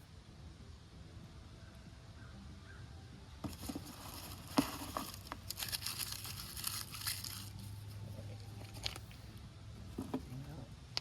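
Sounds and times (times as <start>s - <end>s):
dry material rustling and crackling: 3.4s - 9.2s.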